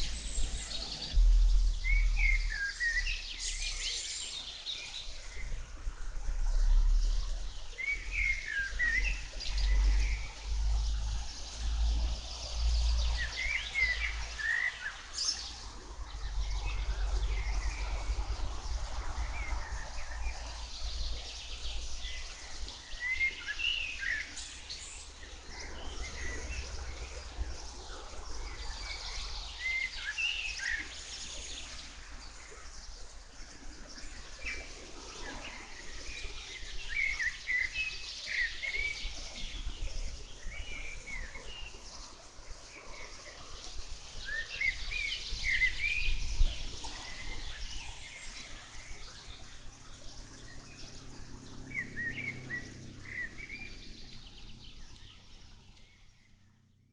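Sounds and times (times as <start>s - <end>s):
birds chirping and singing: 0.0s - 5.4s, 44.2s - 56.4s
steady low rumble: 0.0s - 13.2s.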